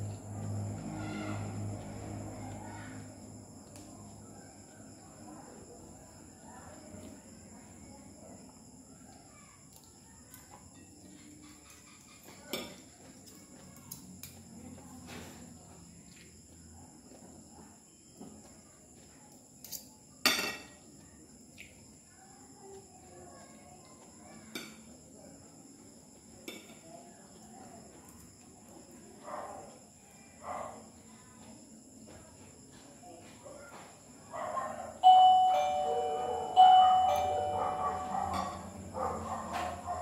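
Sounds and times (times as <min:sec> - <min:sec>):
cutlery clinking on plate: 0:19.6 - 0:20.8.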